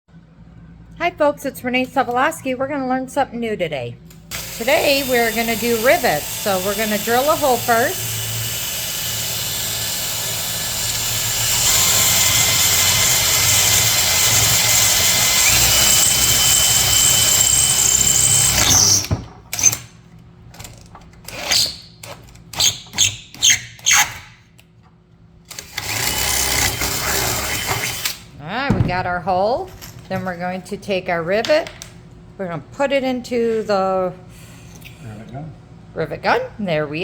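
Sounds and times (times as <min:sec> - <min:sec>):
power drill boring through metal: 0:04.3 - 0:19.8, 0:25.6 - 0:28.2.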